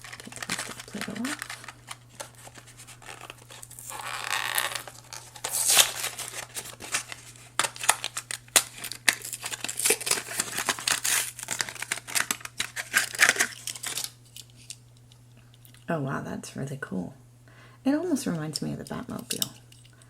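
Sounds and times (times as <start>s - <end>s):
crinkling plastic: 0.0s - 14.8s.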